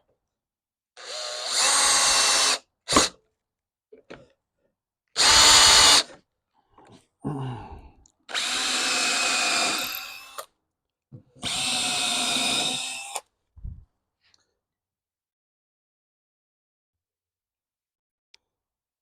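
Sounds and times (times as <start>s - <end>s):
electric drill whining: 1.0s - 2.6s, 5.2s - 6.1s, 8.3s - 10.4s, 11.4s - 13.2s.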